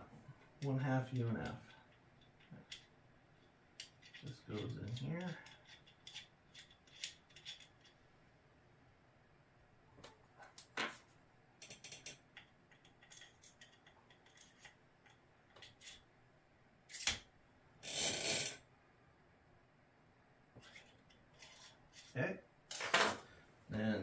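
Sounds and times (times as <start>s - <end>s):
metal parts clicking and tapping: 0.6s - 8.0s, 11.6s - 16.0s.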